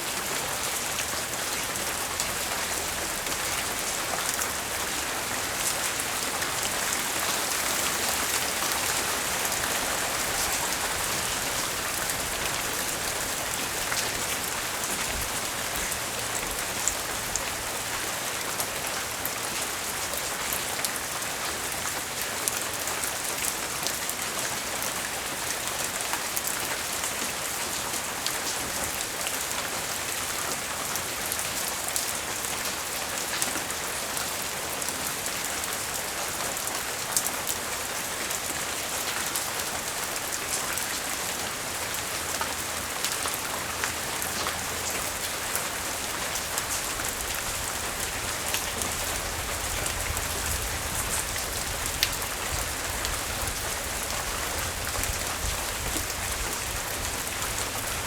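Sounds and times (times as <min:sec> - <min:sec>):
rain drops tapping on hard surfaces: 0:41.8 - 0:58.0.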